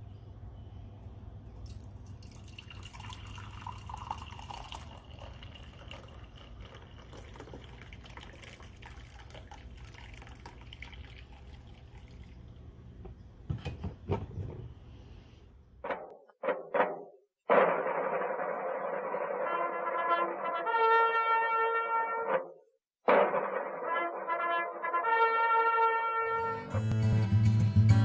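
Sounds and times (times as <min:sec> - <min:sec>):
liquid dripping and trickling: 0:01.5 - 0:12.6
knocks: 0:15.8 - 0:17.8.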